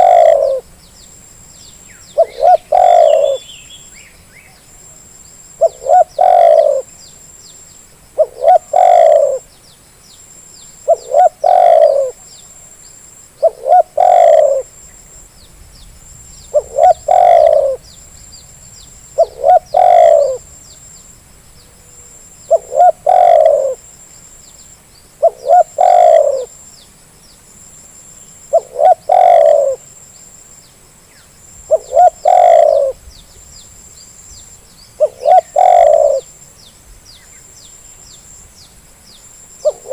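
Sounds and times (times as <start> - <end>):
dove cooing: 0.0 - 0.7, 2.1 - 3.5, 5.6 - 6.9, 8.1 - 9.5, 10.8 - 12.3, 13.4 - 14.8, 16.5 - 17.9, 19.2 - 20.5, 22.5 - 23.9, 25.2 - 26.5, 28.5 - 29.8, 31.7 - 33.0, 35.0 - 36.4, 39.6 - 39.9
faint high bird chirps: 0.0 - 27.5, 28.1 - 39.9.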